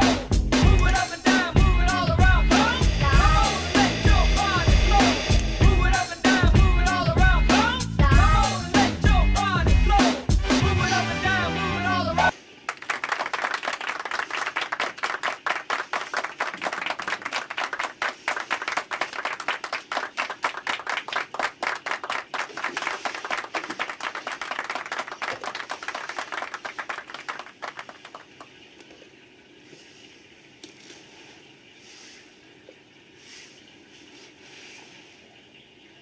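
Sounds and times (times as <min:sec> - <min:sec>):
applause: 0:00.0 - 0:01.6, 0:12.6 - 0:28.5.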